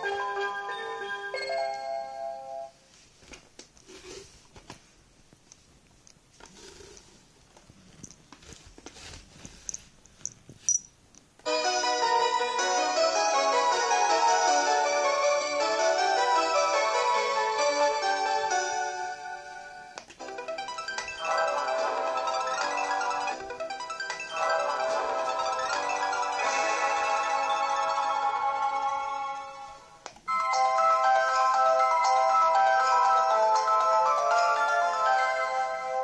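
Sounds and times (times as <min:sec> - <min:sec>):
alarm clock electronic melody: 0:11.6 - 0:36.0.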